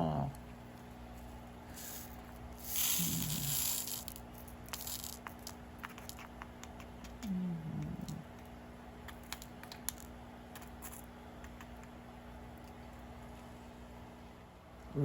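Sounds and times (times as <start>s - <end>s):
beads clicking: 1.8s - 6.8s
person humming: 3.0s - 3.7s, 7.2s - 8.2s.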